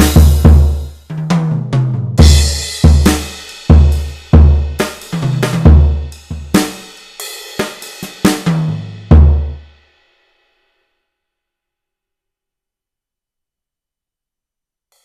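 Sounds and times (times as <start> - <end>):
kick and crash cymbal hit: 0.0 - 1.0, 2.2 - 9.6
electronic drum kit fill: 0.0 - 9.7.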